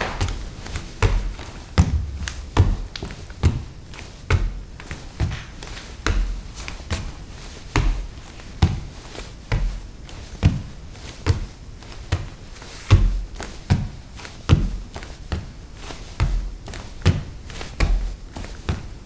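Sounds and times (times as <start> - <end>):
bare footsteps on wooden floor: 0.0 - 7.1.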